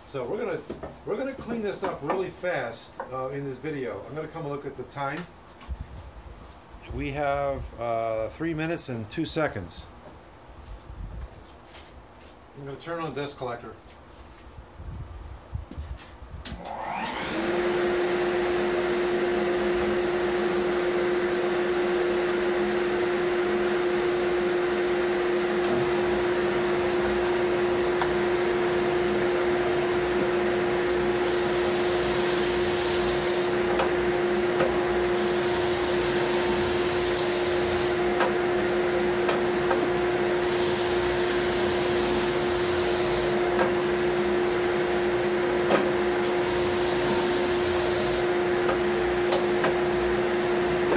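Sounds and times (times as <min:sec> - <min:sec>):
dust collector motor humming: 0:16.6 - 0:50.9
hissing bursts: 0:31.2 - 0:33.6, 0:35.2 - 0:38.0, 0:40.3 - 0:43.4, 0:46.2 - 0:48.2.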